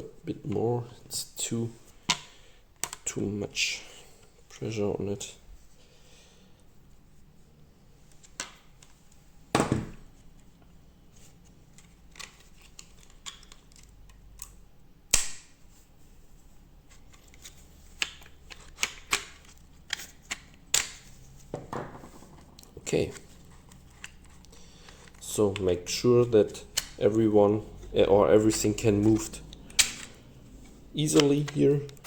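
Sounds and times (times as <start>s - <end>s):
loud plastic snaps: 12.1s - 15.6s, 17.4s - 21.0s, 29.6s - 30.2s.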